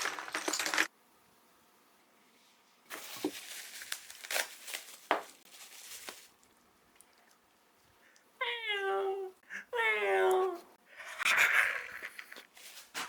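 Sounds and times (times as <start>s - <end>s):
packaging rustling and crinkling: 2.9s - 6.5s.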